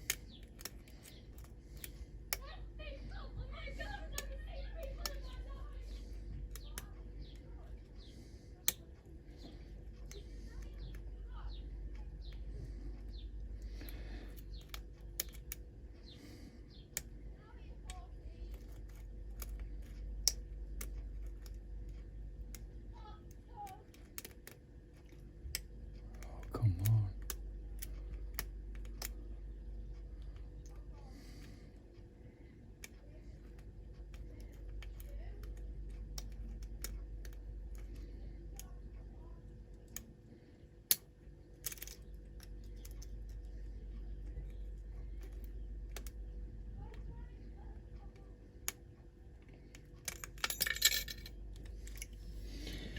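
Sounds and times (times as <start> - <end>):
lock picking metallic clicks: 0.0 - 2.4, 14.3 - 15.6, 23.9 - 29.2, 40.9 - 43.5, 49.7 - 52.2
steady low hum: 0.0 - 52.9.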